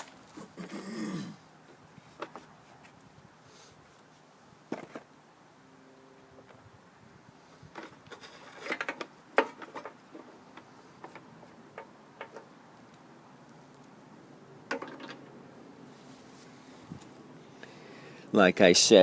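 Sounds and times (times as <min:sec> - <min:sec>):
metallic clicks and knocks: 0:14.7 - 0:15.3.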